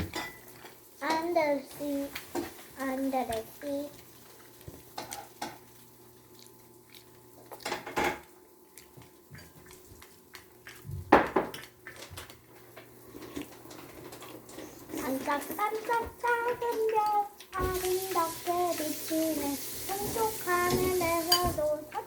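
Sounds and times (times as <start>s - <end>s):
utensils clinking against dishes: 0.0s - 1.3s, 19.9s - 22.0s.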